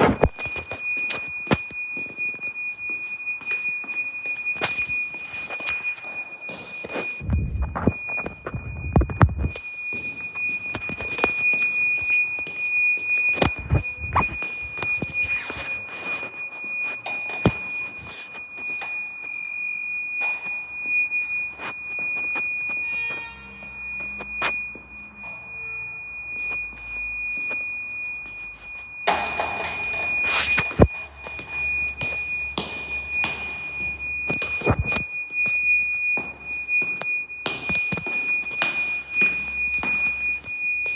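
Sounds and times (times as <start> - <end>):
high-pitched electronic tone: 20.2 - 35.6.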